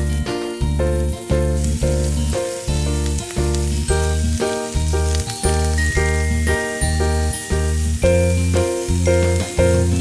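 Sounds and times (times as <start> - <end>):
background music with bass notes: 0.0 - 10.0
food sizzling in a pan: 0.0 - 10.0.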